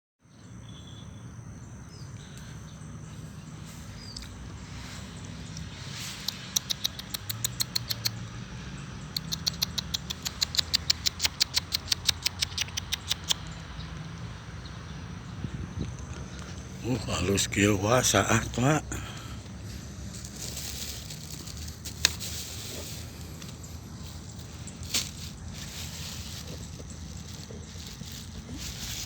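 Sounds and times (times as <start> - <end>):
animal call of sharp high clicks: 6.1 - 8.2, 9.1 - 13.5.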